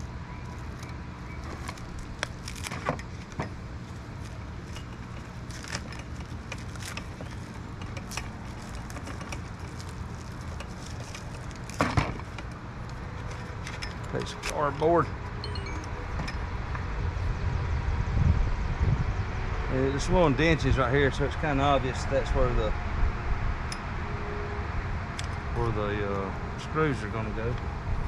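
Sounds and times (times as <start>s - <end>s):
plastic wrap crinkling: 0.6s - 12.4s
wind rumble on microphone: 16.3s - 24.0s.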